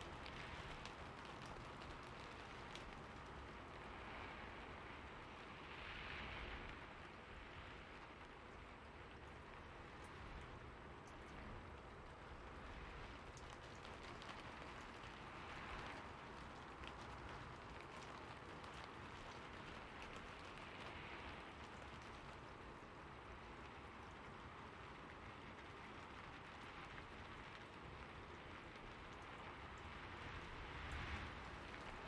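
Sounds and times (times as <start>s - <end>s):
single raindrop ticks: 0.0s - 3.5s
faint steady rainfall: 0.0s - 32.0s.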